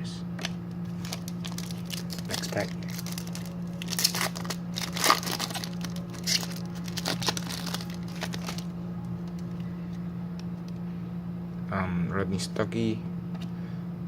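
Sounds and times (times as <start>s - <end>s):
foil wrapper crinkling: 0.8s - 8.7s.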